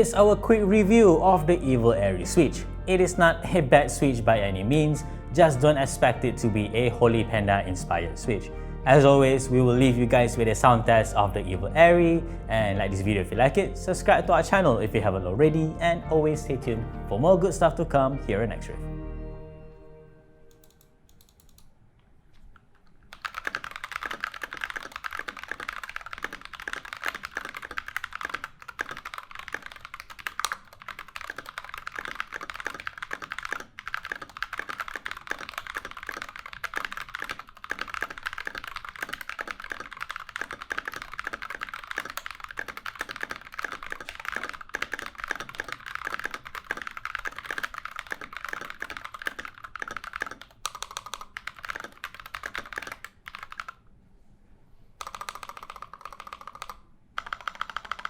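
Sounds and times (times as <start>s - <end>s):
mechanical keyboard typing: 20.5s - 21.7s, 23.1s - 53.8s, 55.0s - 58.0s.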